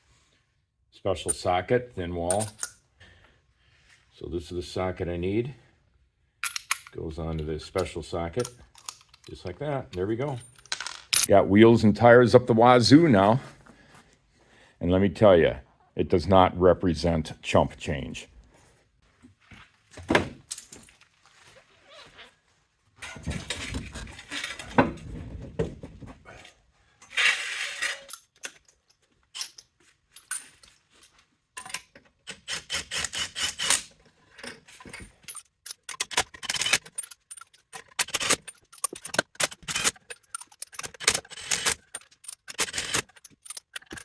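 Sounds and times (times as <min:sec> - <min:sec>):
lug nuts and socket clinking: 0:02.3 - 0:02.8, 0:06.4 - 0:11.3, 0:34.4 - 0:44.0.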